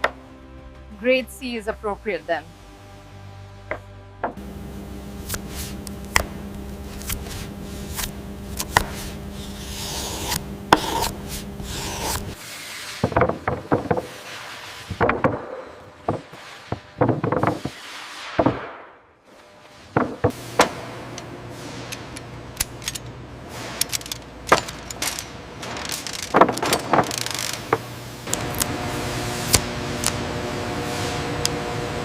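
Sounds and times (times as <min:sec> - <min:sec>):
factory machinery humming: 0:00.0 - 0:13.7, 0:19.3 - 0:32.0
wooden panels knocking and clacking: 0:13.0 - 0:14.1, 0:14.9 - 0:17.8.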